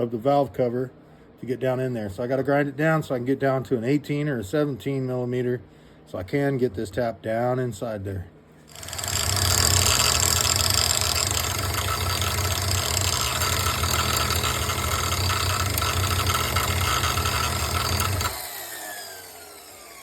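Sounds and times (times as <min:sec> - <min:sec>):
power grinder grinding metal: 0:08.7 - 0:20.0.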